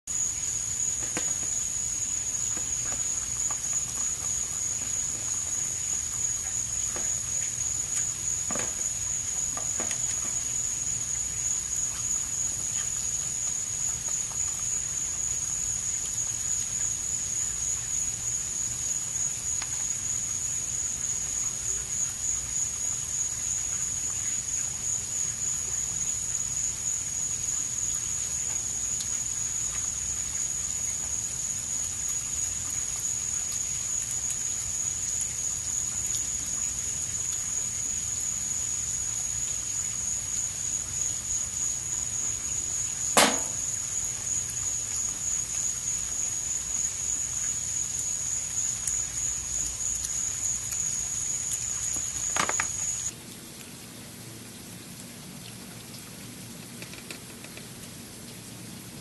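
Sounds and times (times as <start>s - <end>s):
insects trilling: 0.1s - 53.2s
faint clicks: 56.6s - 57.7s.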